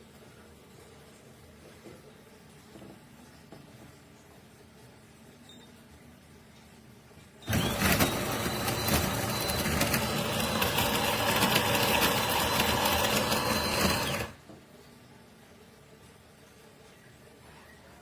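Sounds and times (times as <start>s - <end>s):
coffee grinder whirring: 7.4s - 14.4s.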